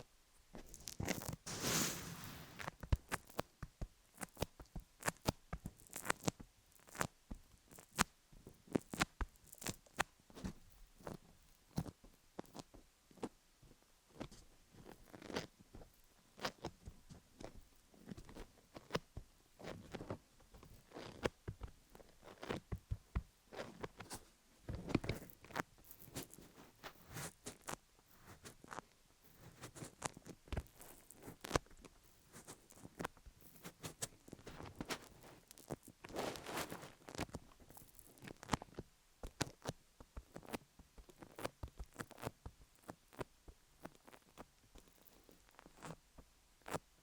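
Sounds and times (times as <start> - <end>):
crackly rub on microphone: 0.6 - 13.3, 14.1 - 46.9
sticky clicks and crackles on microphone: 19.6 - 46.0.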